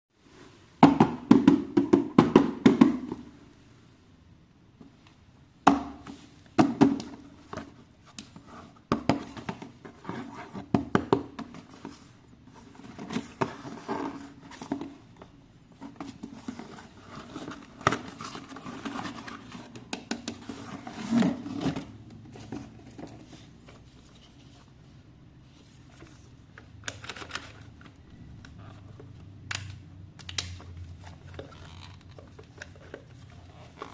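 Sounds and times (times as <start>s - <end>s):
packaging rustling and clicking: 25.8s - 33.9s.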